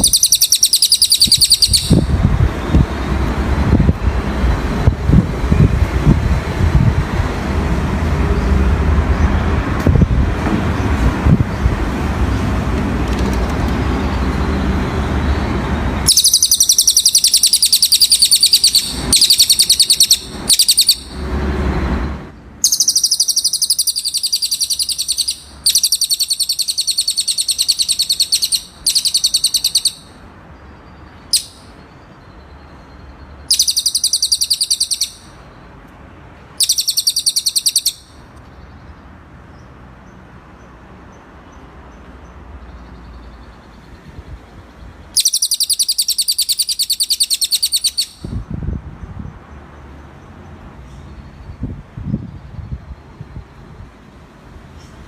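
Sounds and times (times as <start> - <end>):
songbird trilling: 0.0 - 2.2, 16.0 - 21.2, 22.6 - 30.2, 30.8 - 35.5, 36.6 - 38.9, 45.0 - 48.4
steady rumbling noise: 1.3 - 16.2.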